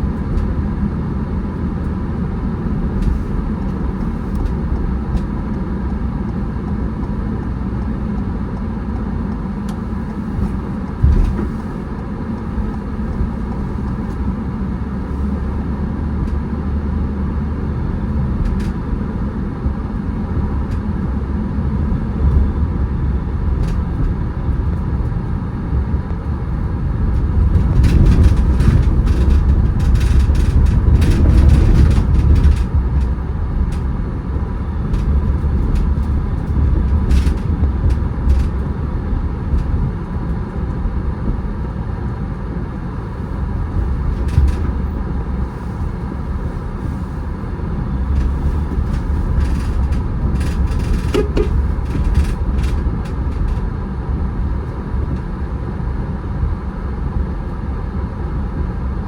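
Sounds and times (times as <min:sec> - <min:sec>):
car engine and tyre rumble: 0:00.0 - 0:59.0
thump: 0:10.4 - 0:11.8.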